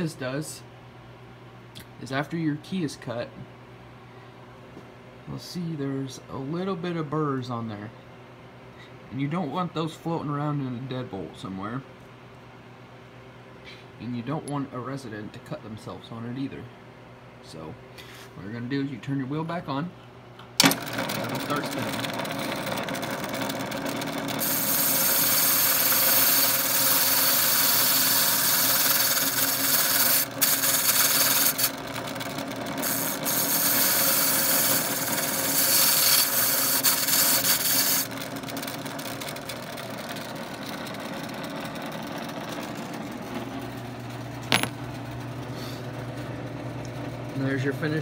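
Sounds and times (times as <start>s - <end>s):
machine motor running: 20.6s - 47.4s.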